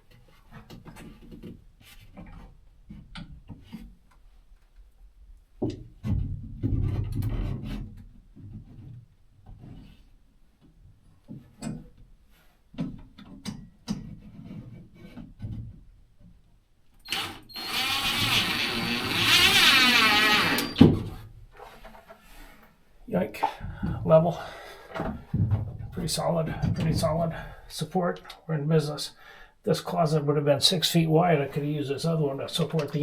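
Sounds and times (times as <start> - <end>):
power drill driving a screw: 17.1 - 21.0.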